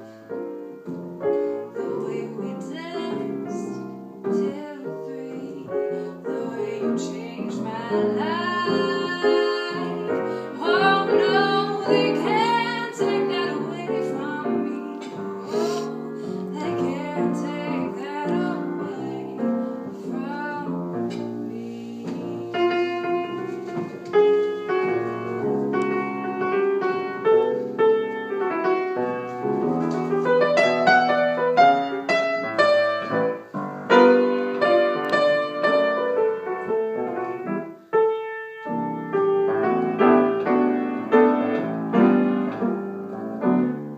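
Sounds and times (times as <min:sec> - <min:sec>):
piano music: 0:00.0 - 0:43.9
woman singing wordlessly: 0:01.7 - 0:23.5.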